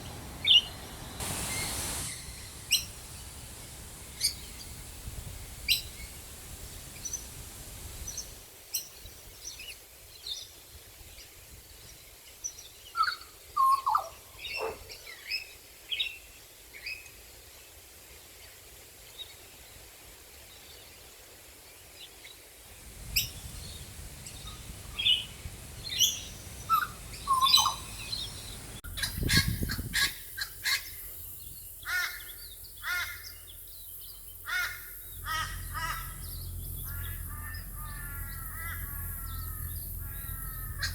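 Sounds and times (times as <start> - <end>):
birds chirping and whistling: 23.2 - 30.2, 31.5 - 40.9.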